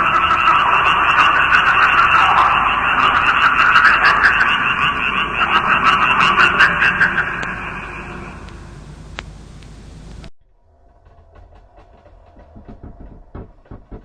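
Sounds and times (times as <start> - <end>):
hissing and buzzing noise: 0.0 - 10.3
irregular crackling clicks: 8.4 - 10.3.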